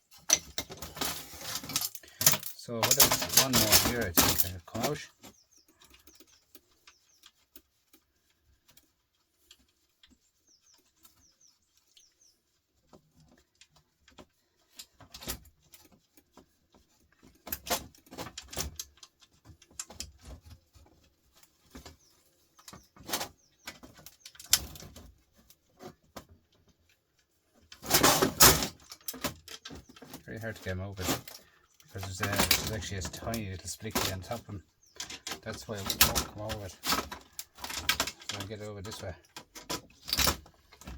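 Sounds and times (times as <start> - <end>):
screwdriver and metal parts clicking: 0.1 - 5.0.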